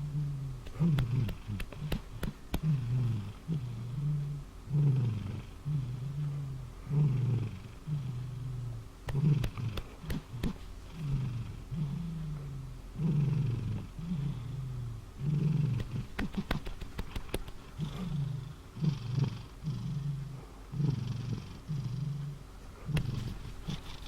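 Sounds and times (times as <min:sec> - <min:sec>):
sharp clicks: 0:00.6 - 0:02.7, 0:15.8 - 0:17.7
cat snoring: 0:17.8 - 0:24.0.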